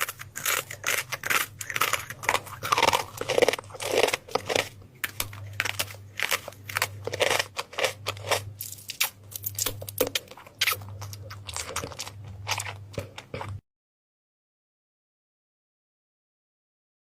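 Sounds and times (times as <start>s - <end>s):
crisp crunching and crackling: 0.0s - 13.6s
steady low hum: 0.0s - 13.6s.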